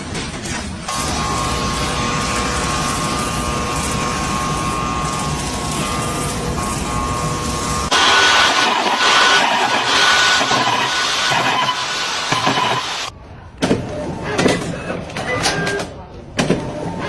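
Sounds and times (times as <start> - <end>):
factory machine rumbling: 0.0 - 17.0
high machine whine: 0.9 - 13.1.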